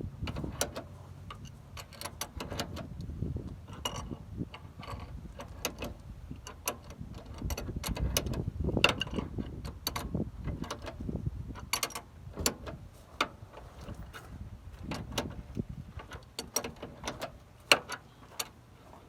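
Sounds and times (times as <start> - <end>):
metal tools clicking and knocking: 0.3 - 2.8, 3.7 - 11.0, 11.6 - 13.3, 16.0 - 18.6.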